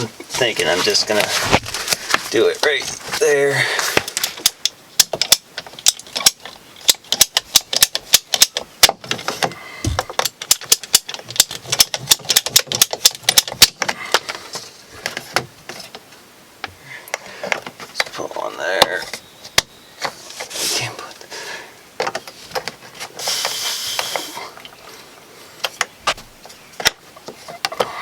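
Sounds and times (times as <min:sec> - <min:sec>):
plumbing tools clicking and rattling: 0:02.6 - 0:16.0.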